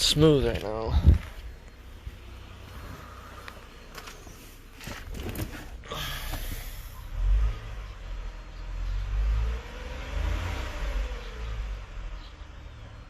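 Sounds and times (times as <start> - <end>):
car engine rumbling: 0.0 - 13.0.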